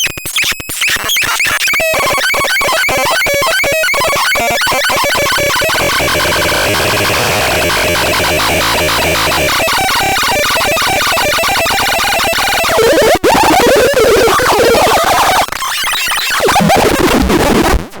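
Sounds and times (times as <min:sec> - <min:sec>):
warbling synthesized electronic tones: 0:03.9 - 0:15.4.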